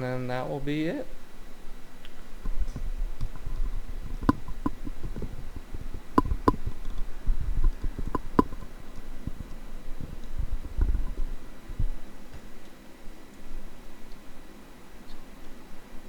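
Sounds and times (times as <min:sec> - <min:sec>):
sharp light metal clicks: 0:02.0 - 0:11.3.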